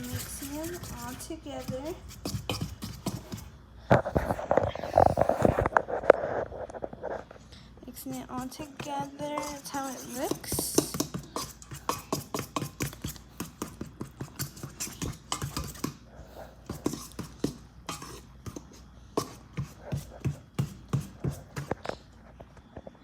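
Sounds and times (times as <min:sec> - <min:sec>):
fork beating batter in bowl: 0:00.0 - 0:06.2, 0:07.9 - 0:22.0.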